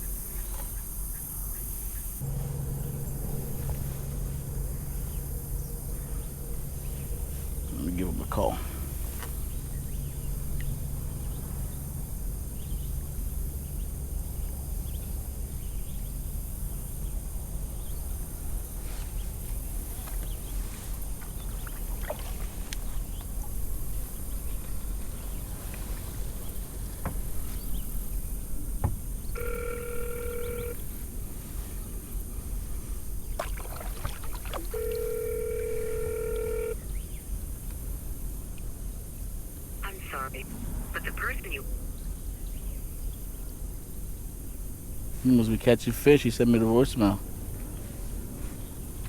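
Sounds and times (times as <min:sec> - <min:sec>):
steady low rumble: 0:02.2 - 0:16.0
phone ringback tone: 0:29.4 - 0:30.9, 0:34.7 - 0:36.8.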